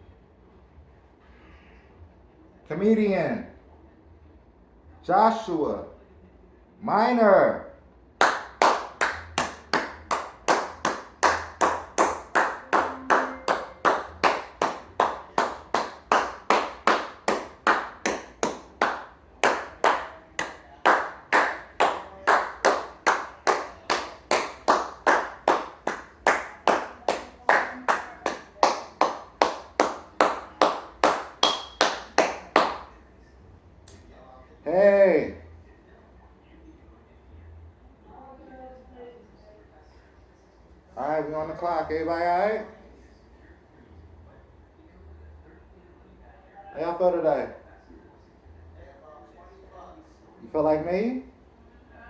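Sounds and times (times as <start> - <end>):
slow steady hand clapping: 8.2 - 33.0.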